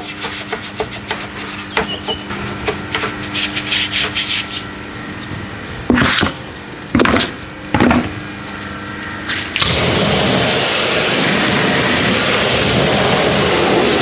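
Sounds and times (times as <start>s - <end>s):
rhythmic scrubbing on a surface: 0.0s - 4.7s
steady low hum: 0.0s - 14.0s.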